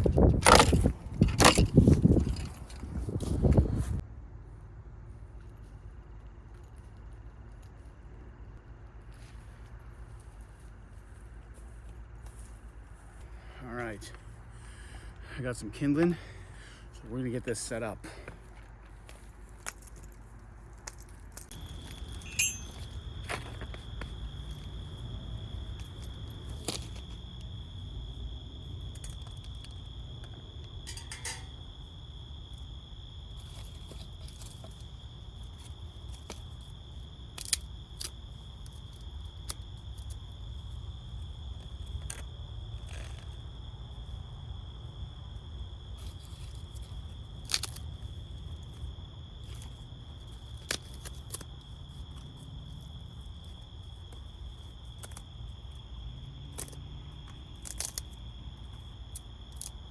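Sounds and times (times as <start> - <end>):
high insect drone: 21.5 - 59.9.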